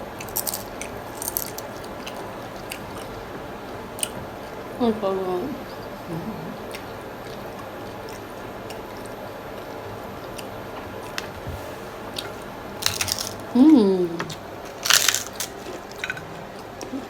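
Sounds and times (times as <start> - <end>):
chewing crunchy taco shells: 0.0 - 4.6, 6.6 - 11.4, 12.1 - 13.6, 14.3 - 17.0.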